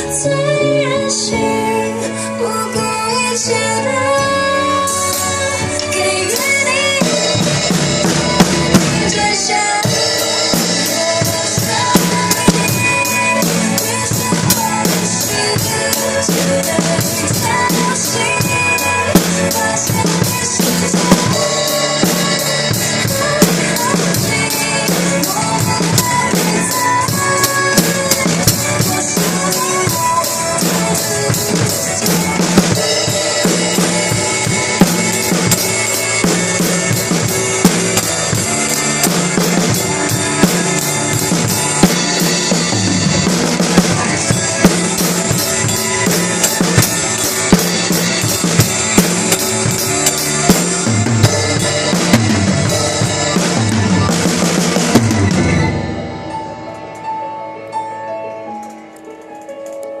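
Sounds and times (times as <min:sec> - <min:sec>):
recorded pop song: 0:00.0 - 1:00.0
drum kit playing: 0:01.4 - 0:57.7.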